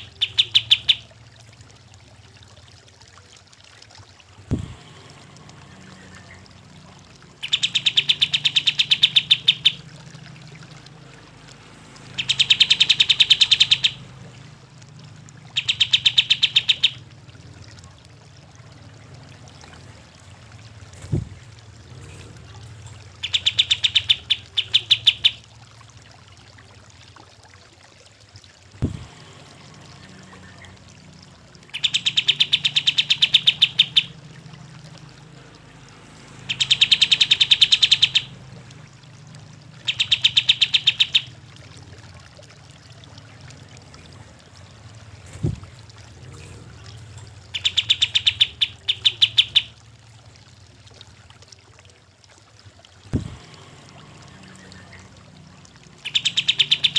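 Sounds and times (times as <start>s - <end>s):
bird song rattling notes: 0.0s - 1.0s, 7.4s - 9.8s, 12.1s - 14.0s, 15.4s - 17.0s, 23.1s - 25.4s, 31.7s - 34.2s, 36.4s - 38.3s, 39.8s - 41.3s, 47.0s - 49.8s, 56.0s - 56.9s.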